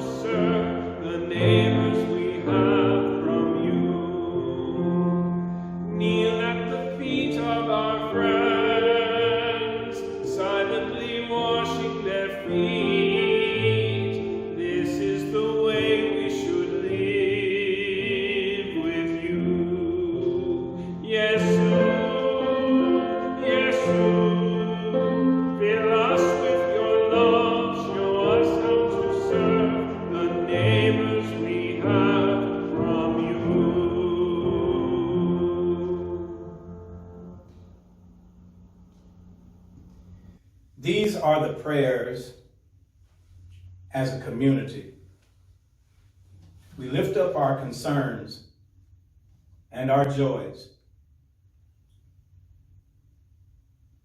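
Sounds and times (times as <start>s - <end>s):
keyboard accompaniment: 0.0s - 41.2s.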